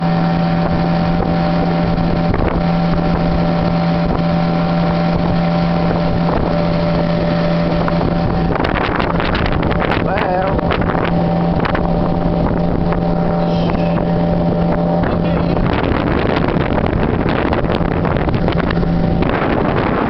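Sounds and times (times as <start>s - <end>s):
outboard motor running: 0.0s - 20.0s.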